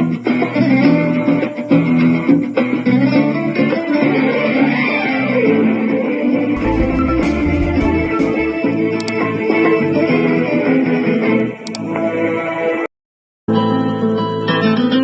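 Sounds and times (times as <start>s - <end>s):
percussive hits: 6.6s - 8.6s
bass part: 6.6s - 8.7s
plucked guitar music: 6.6s - 10.9s.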